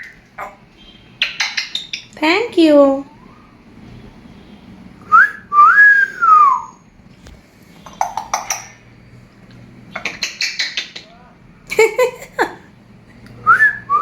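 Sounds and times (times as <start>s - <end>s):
parrot whistling: 5.0s - 6.8s, 13.4s - 14.0s.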